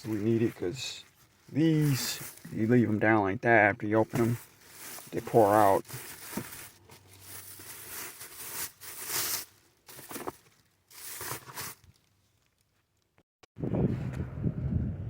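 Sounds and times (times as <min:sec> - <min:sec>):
rustling and crinkling handling noise: 0:00.0 - 0:13.2.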